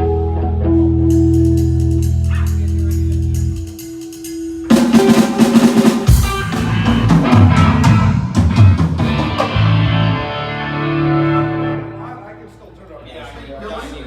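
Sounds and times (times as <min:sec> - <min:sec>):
held bass notes: 0:00.0 - 0:03.8, 0:06.1 - 0:12.2
drum kit hits and fills: 0:01.1 - 0:10.2.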